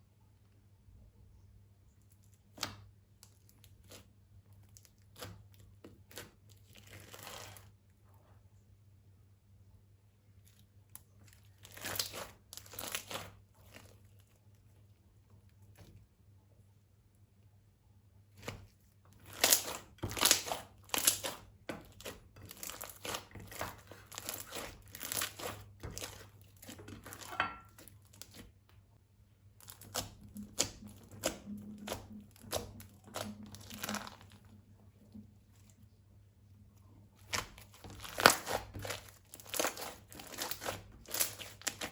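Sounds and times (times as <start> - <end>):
plastic bags crinkling: 19.2 - 28.2, 30.8 - 34.4, 37.4 - 41.9.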